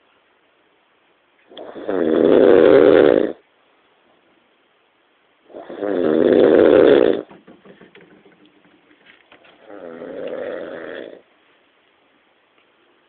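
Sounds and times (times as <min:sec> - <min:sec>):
snoring: 0:01.5 - 0:03.4, 0:05.5 - 0:07.3, 0:09.6 - 0:11.2.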